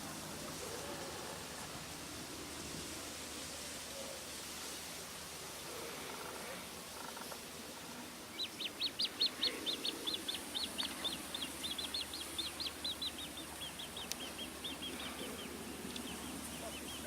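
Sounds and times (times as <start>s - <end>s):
bird calling: 8.3s - 17.0s.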